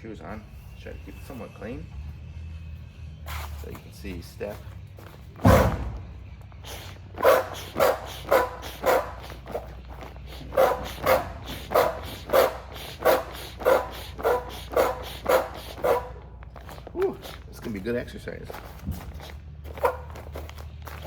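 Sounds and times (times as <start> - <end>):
foot pump puffing air: 3.3 - 3.7, 5.4 - 17.8, 18.5 - 21.0.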